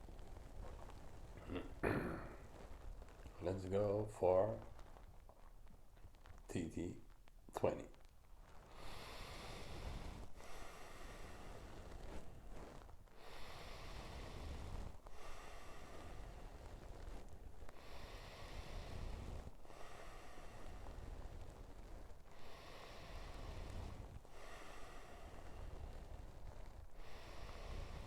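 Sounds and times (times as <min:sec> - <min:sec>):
person breathing deeply: 0:08.7 - 0:28.0.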